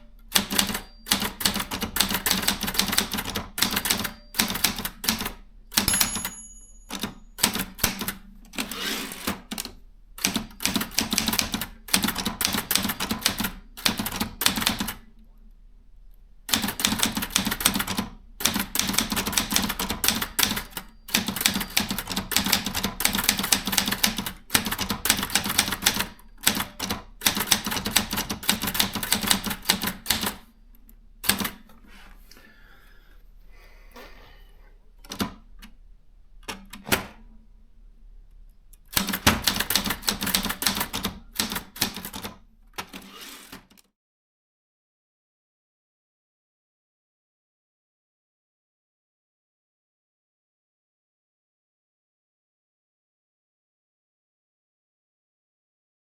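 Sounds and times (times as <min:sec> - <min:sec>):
typewriter keystrikes: 0:00.3 - 0:15.0, 0:38.9 - 0:43.9.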